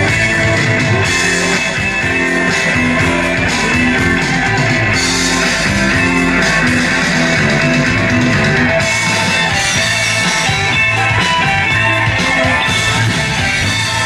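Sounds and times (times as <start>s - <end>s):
rock music with guitar: 0.0s - 14.0s
stepping bass line: 0.0s - 14.0s.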